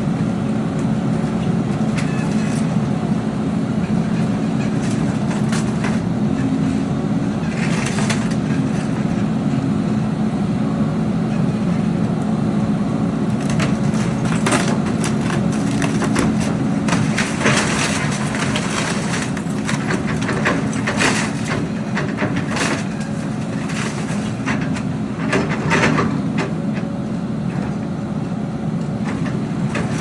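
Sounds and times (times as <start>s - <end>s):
heavy machine engine running: 0.0s - 30.0s
cracking and crunching: 3.9s - 9.2s, 13.3s - 26.5s.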